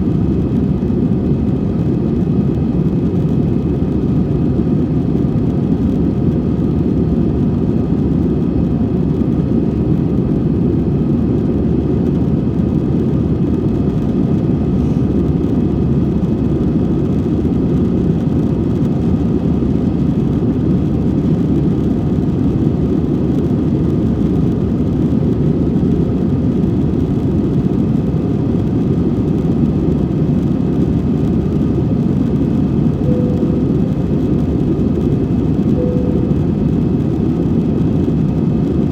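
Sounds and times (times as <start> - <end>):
jet engine cabin roar: 0.0 - 38.9.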